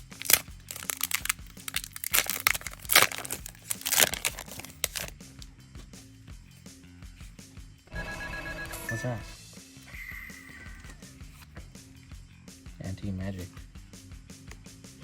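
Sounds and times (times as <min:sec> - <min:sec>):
foil pack crinkling and tearing: 0:00.0 - 0:05.1
quiet background music: 0:00.0 - 0:15.0.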